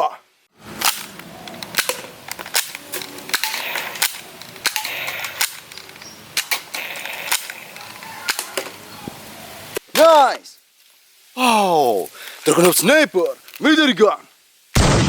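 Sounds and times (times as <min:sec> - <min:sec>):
sharp gunshot-like cracks: 0:14.8 - 0:15.0.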